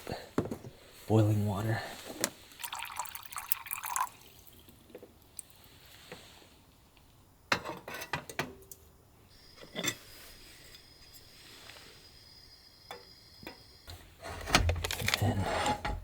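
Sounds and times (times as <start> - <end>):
water poured into pot: 2.5 - 5.6
cookware clicks and knocks: 7.5 - 8.6.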